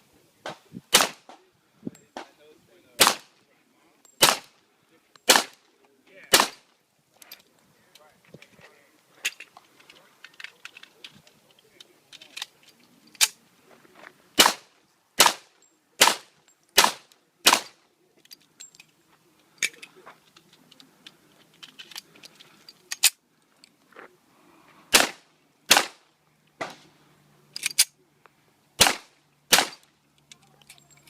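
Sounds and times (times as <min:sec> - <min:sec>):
pistol shots: 0:00.4 - 0:01.4, 0:03.0 - 0:03.3, 0:04.2 - 0:04.5, 0:05.3 - 0:05.6, 0:06.3 - 0:06.6, 0:14.4 - 0:17.8, 0:24.9 - 0:26.0, 0:28.8 - 0:29.8.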